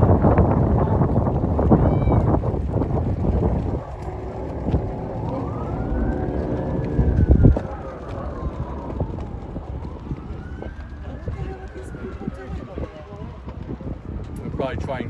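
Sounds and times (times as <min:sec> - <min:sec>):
low thumps: 0:00.0 - 0:10.2
emergency siren wailing: 0:00.0 - 0:15.0
steady low rumble: 0:00.0 - 0:15.0.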